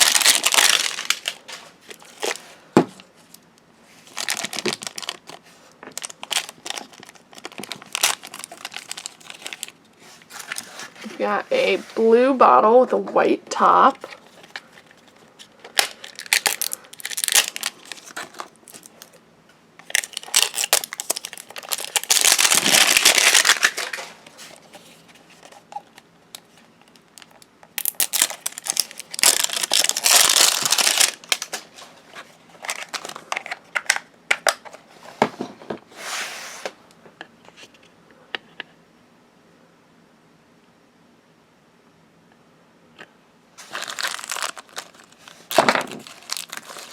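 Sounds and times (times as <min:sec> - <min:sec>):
plastic wrappers crinkling and tearing: 0:00.0 - 0:02.5, 0:04.0 - 0:11.0, 0:14.0 - 0:19.2, 0:19.8 - 0:34.7, 0:43.6 - 0:46.9.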